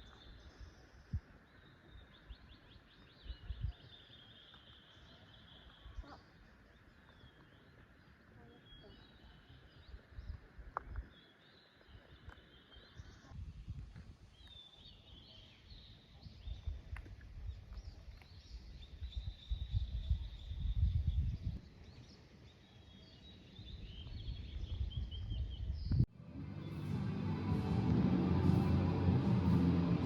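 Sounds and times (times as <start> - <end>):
small birds chirping: 0.0 - 13.4
low uneven rumble: 26.1 - 30.0.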